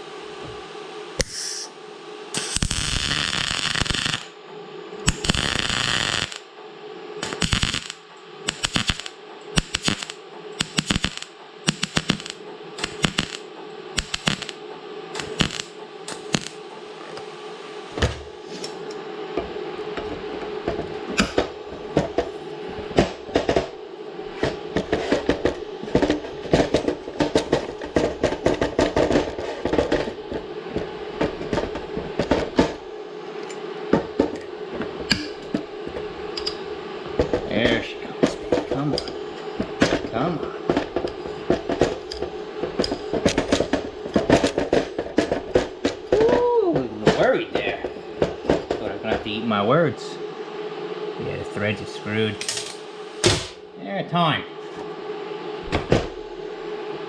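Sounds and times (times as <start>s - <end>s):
welder hum: 0.0s - 57.0s
welding arc crackling: 1.2s - 1.7s, 2.3s - 4.4s, 5.0s - 6.5s, 7.2s - 16.7s, 35.1s - 46.2s, 52.2s - 53.6s.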